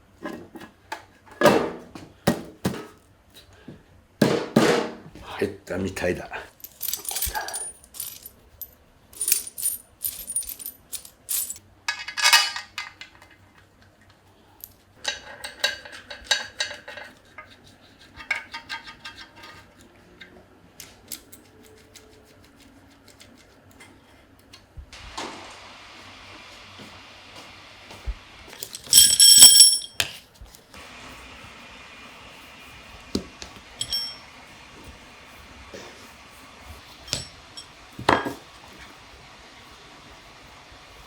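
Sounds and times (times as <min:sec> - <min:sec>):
metal tools clinking: 0:06.5 - 0:08.4, 0:09.2 - 0:12.7, 0:28.6 - 0:30.1, 0:33.8 - 0:34.2, 0:37.1 - 0:38.3.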